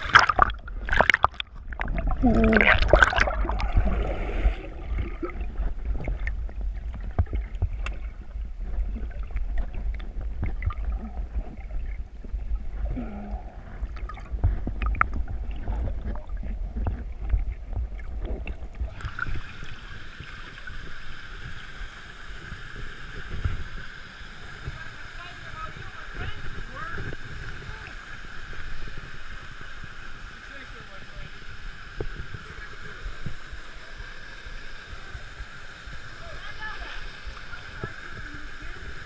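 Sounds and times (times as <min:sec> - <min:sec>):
rushing water hiss: 0:00.0 - 0:09.0, 0:18.2 - 0:39.0
water sloshing: 0:00.0 - 0:19.8.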